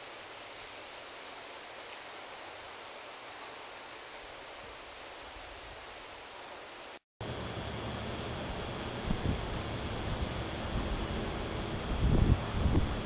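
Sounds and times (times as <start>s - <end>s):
steady hiss: 0.0s - 13.0s
faint high-pitched whine: 7.2s - 13.0s.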